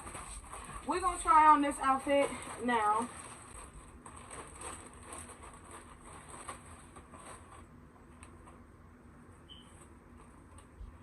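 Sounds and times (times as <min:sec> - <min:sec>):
clothes rustling: 0:00.0 - 0:07.7.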